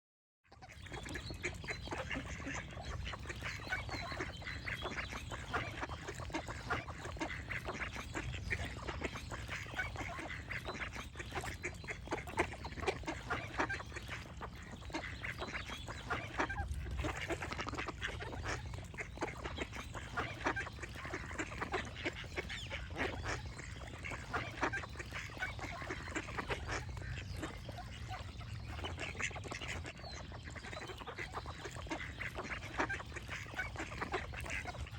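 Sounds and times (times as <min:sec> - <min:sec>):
ducks quacking: 0:00.5 - 0:34.9.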